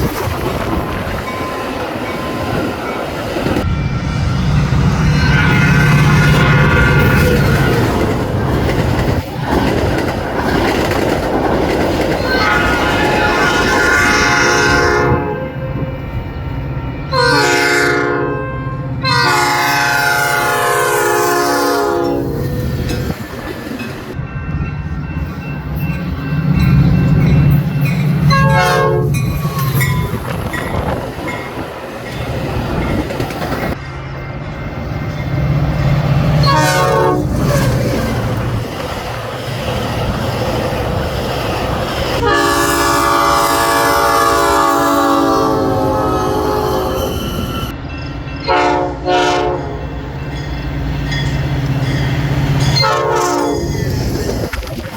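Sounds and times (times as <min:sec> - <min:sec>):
locomotive air horn blasts: 0:05.1 - 0:07.7, 0:12.2 - 0:16.0, 0:17.1 - 0:22.6, 0:28.3 - 0:29.9, 0:36.3 - 0:37.3, 0:42.2 - 0:47.6, 0:48.5 - 0:49.8, 0:52.8 - 0:53.6
train wheels clattering on rails: 0:06.6 - 0:14.2, 0:29.2 - 0:36.1.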